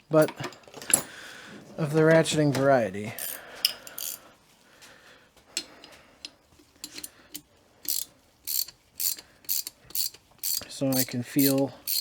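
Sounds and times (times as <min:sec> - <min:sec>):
ratchet wrench clicking: 0:03.2 - 0:04.2, 0:06.9 - 0:12.0.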